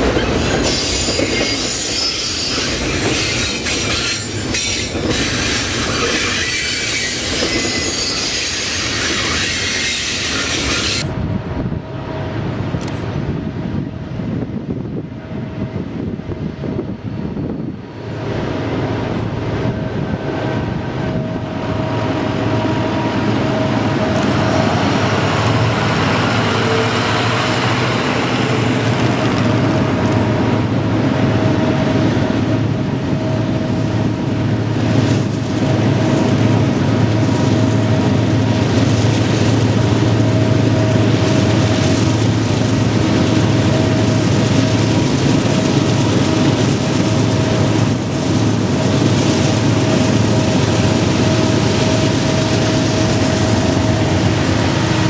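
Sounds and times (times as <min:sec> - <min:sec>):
train passing close by: 0:00.0 - 0:55.0.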